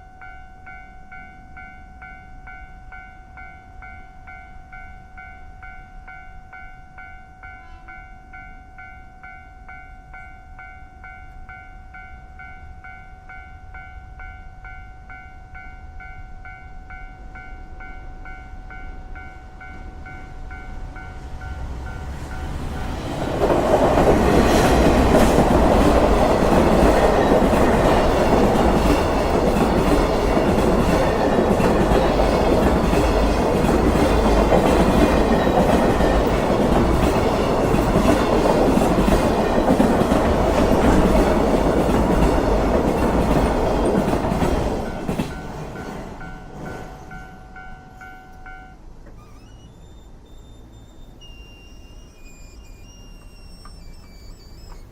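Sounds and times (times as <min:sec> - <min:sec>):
level crossing warning bell: 0:00.0 - 0:54.9
train wheels clattering: 0:21.4 - 0:48.0.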